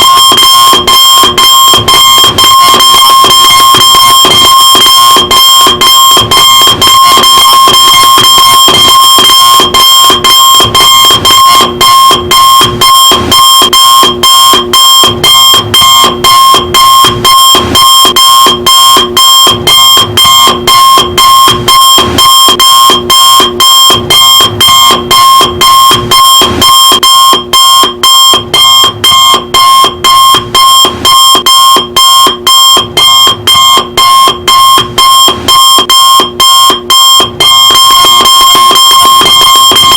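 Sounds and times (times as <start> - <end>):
alarm clock beeping: 0.0 - 39.9.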